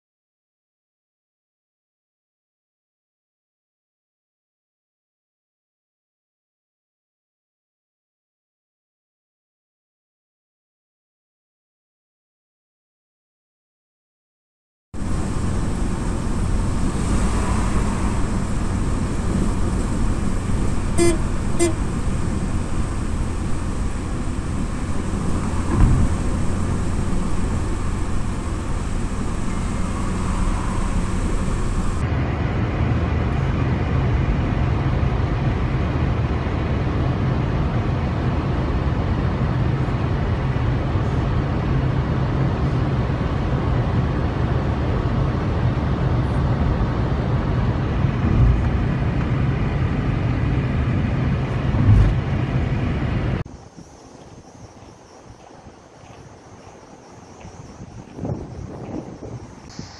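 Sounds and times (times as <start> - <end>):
car driving rumble: 15.0 - 32.0
thumps: 18.6 - 32.0.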